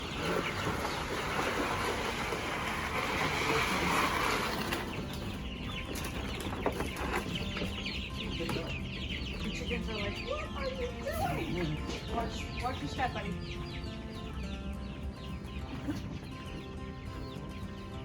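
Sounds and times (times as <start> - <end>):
chicks peeping: 0.0 - 18.0.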